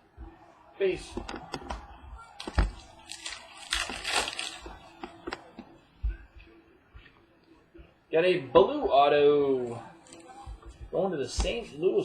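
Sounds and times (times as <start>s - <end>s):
card wrapper clicks and crinkling: 2.4s - 5.4s.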